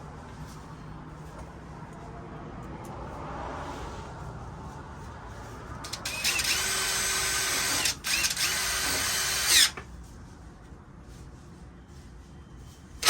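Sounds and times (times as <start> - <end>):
cordless drill driving screws: 5.9 - 9.8.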